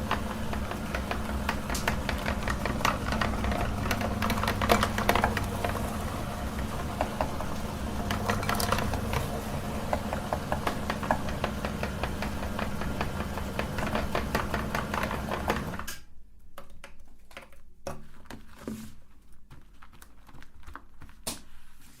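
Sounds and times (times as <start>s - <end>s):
auger crunching chocolate: 0.0s - 15.8s
electric meat grinder humming: 0.0s - 15.9s
scattered clicks and knocks: 0.0s - 16.0s.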